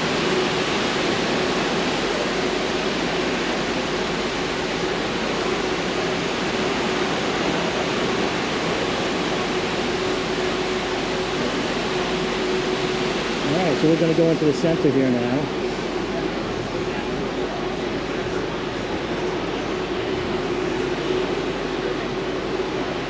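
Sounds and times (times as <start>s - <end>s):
air conditioning blowers rushing: 0.0s - 23.0s.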